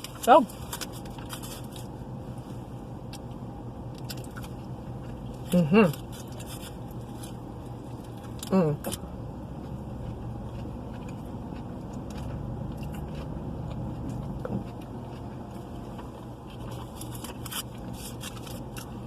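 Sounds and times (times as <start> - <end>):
low hum: 0.0 - 19.0
chewing food: 4.0 - 19.0.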